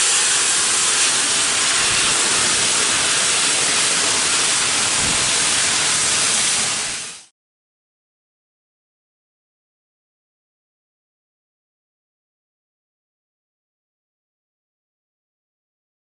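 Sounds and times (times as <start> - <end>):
loud steady hiss: 0.0 - 7.3.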